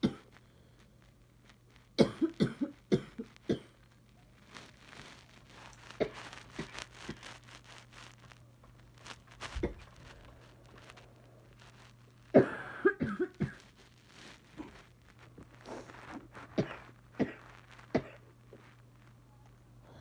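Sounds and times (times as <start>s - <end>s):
woman coughing: 12.4s - 13.6s.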